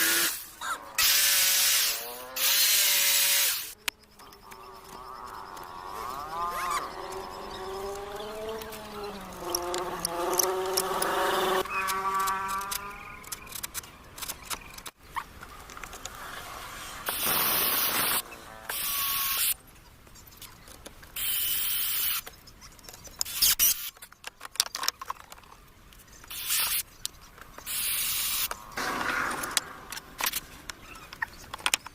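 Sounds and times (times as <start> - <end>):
small clicks and knocks: 7.1 - 16.2, 22.2 - 27.7, 29.5 - 31.9
hissing spray bursts: 17.0 - 19.6.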